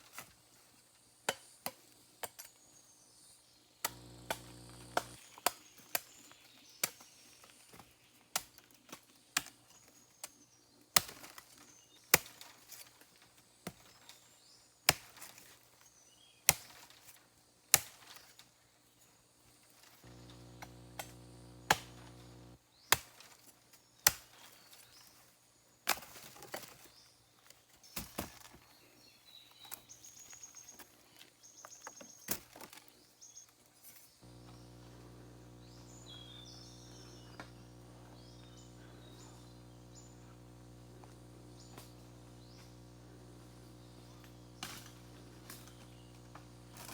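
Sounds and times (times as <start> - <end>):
wood being chopped: 3.8 - 6.1, 11.0 - 11.4, 16.5 - 17.0, 17.7 - 18.2, 20.1 - 23.4, 24.0 - 24.4, 25.8 - 26.7, 44.0 - 46.9.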